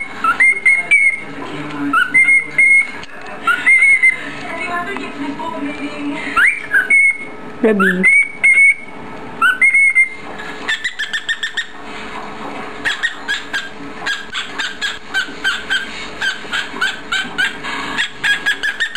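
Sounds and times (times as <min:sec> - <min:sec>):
cockatiel chirping: 0:00.0 - 0:01.2, 0:01.9 - 0:04.2, 0:06.4 - 0:11.8, 0:12.8 - 0:18.9
cockatiel whistling: 0:00.0 - 0:01.3, 0:01.9 - 0:04.2, 0:06.4 - 0:11.8, 0:12.8 - 0:18.9.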